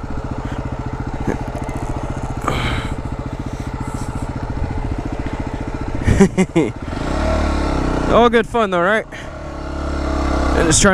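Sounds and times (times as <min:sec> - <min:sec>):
motorcycle engine chugging: 0:00.0 - 0:10.9.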